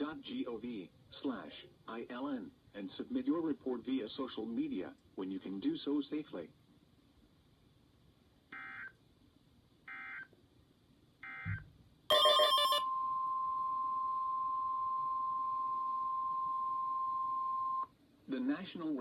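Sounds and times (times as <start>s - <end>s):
loud steady alarm tone: 12.1s - 13.0s.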